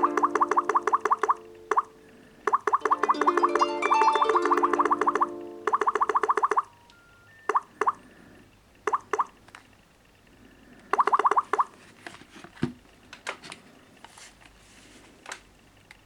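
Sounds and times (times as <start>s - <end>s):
electronic alert blips: 0.0s - 8.0s, 8.9s - 9.3s, 11.0s - 11.7s.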